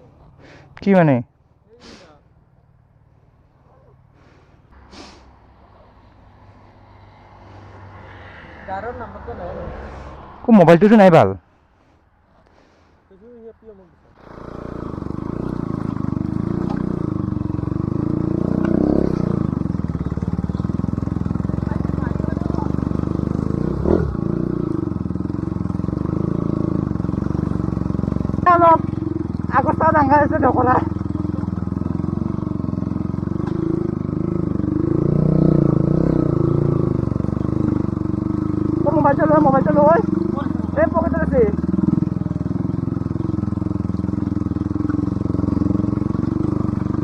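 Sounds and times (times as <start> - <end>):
motorcycle engine running: 14.1 - 47.0.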